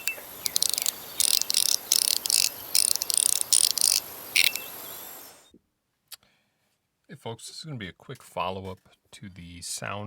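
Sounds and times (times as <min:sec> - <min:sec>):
high metallic chattering: 0:00.0 - 0:04.8
thin high ringing tone: 0:00.0 - 0:05.2.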